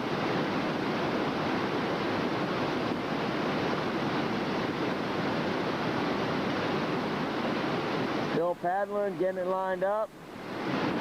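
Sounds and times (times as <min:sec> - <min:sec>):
whitewater rapids rushing: 0:00.0 - 0:11.0.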